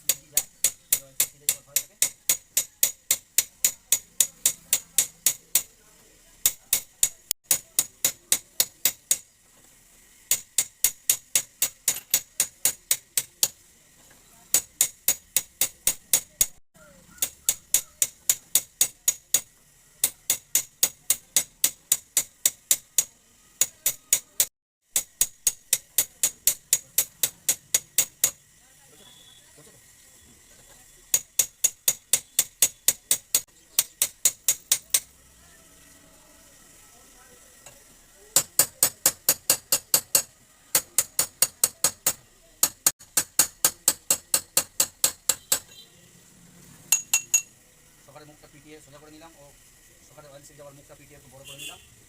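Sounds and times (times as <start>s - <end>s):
hammer tapping on metal: 0.0s - 5.8s, 6.4s - 9.4s, 10.3s - 13.6s, 14.5s - 28.4s, 31.1s - 35.1s, 38.4s - 45.8s, 46.9s - 47.5s.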